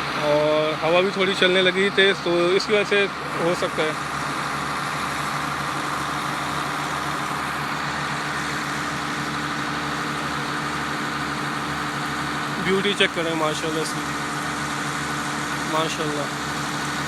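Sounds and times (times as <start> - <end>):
vehicle engine idling: 0.0 - 17.0.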